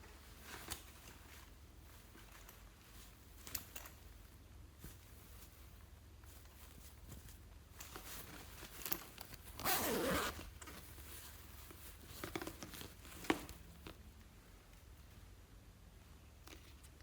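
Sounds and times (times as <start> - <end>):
soft rustles: 0.0 - 15.4, 16.0 - 17.0.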